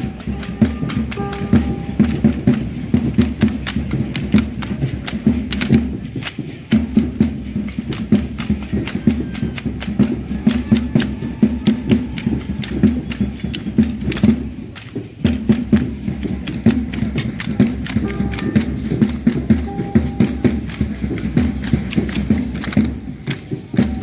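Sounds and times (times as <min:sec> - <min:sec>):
drum beating: 0:00.0 - 0:24.0
rattles clicking: 0:00.0 - 0:24.0.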